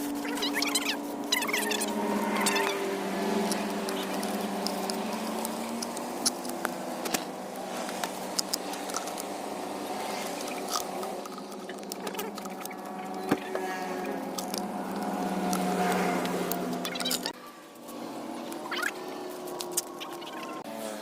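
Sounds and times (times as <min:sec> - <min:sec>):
scratching rubbing noise: 0:00.0 - 0:21.0
small electric motor humming: 0:00.0 - 0:21.0.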